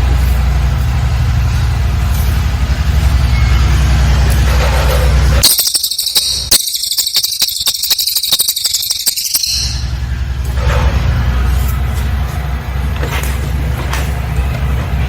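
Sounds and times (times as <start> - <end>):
bird singing high rapid trill: 5.4 - 10.1.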